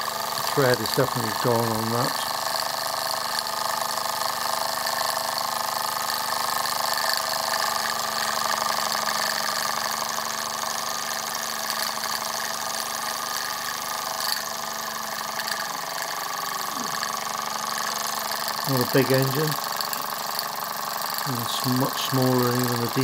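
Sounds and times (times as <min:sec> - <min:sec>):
toy steam engine exhaust beats: 0:00.0 - 0:23.0
steam hissing: 0:15.2 - 0:23.0.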